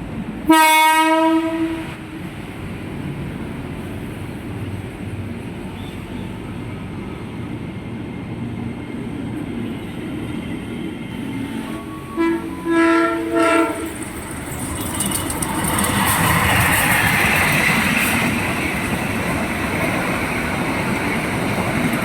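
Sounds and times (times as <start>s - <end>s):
train wheel and rail noise: 0.0s - 22.0s
train horn blasts: 0.5s - 2.2s, 11.2s - 14.1s.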